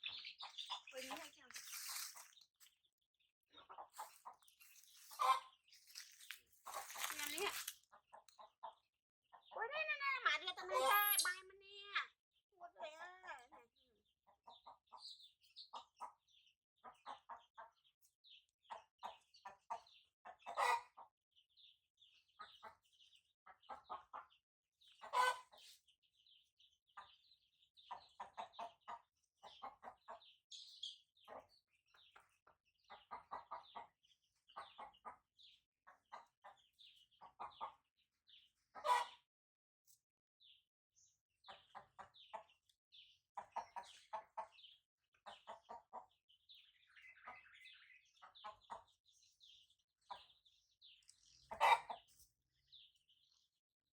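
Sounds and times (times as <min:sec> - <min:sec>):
chickens clucking: 0:00.0 - 0:02.8, 0:03.5 - 0:09.7, 0:10.3 - 0:11.4, 0:14.2 - 0:39.3, 0:41.3 - 0:53.4
chicks peeping: 0:00.0 - 0:02.8, 0:03.6 - 0:09.6, 0:13.4 - 0:39.3, 0:41.3 - 0:53.4.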